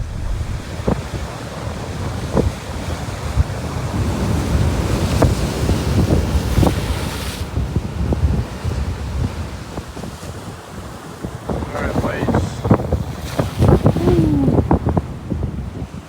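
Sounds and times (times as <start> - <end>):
water splashes: 0.0 - 1.0
ocean surf on rocks: 0.0 - 1.1, 10.2 - 15.0
wind rumbling on microphone: 0.0 - 1.4, 11.2 - 16.0.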